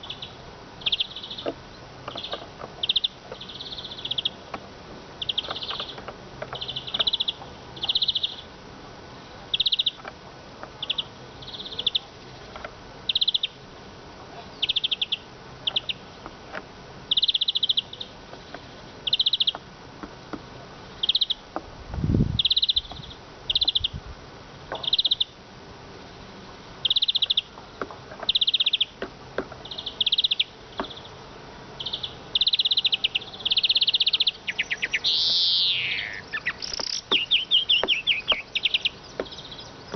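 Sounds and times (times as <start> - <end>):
bird singing buzzy twittering: 0.0 - 4.5, 5.1 - 8.6, 9.5 - 10.0, 10.8 - 13.6, 14.5 - 16.2, 17.1 - 19.6, 20.9 - 21.5, 22.2 - 24.0, 24.8 - 25.4, 26.8 - 27.5, 28.2 - 29.0, 29.6 - 39.9.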